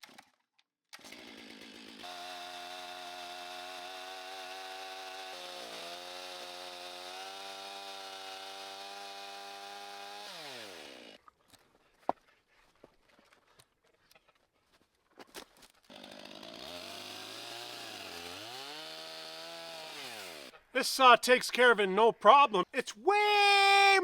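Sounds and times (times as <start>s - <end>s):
chainsaw cutting through log: 1.0s - 11.2s, 15.9s - 20.6s.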